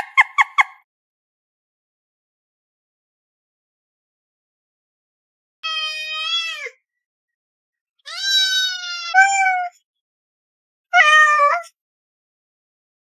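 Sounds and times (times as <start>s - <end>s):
cat meowing: 5.6s - 6.8s, 8.1s - 9.8s, 11.0s - 11.7s.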